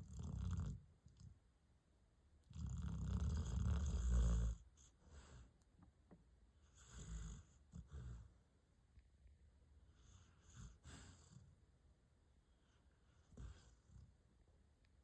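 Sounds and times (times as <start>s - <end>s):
dog snoring: 0.0s - 1.3s, 2.4s - 5.5s, 6.6s - 8.4s, 9.9s - 11.6s, 12.6s - 14.1s.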